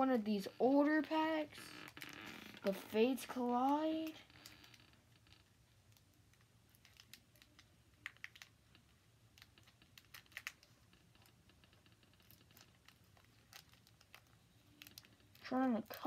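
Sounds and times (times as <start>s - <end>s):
plastic packaging clicks and taps: 6.0s - 8.8s.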